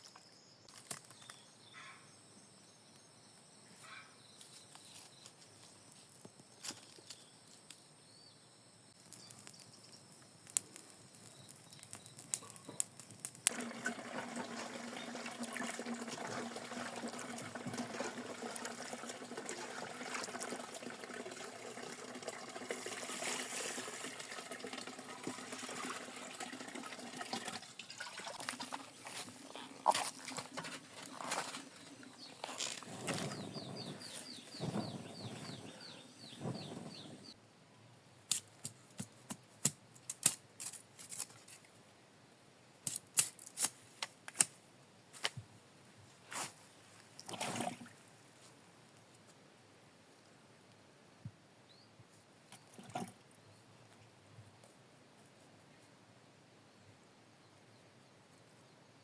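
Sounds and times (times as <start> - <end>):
water running: 13.5 - 32.2.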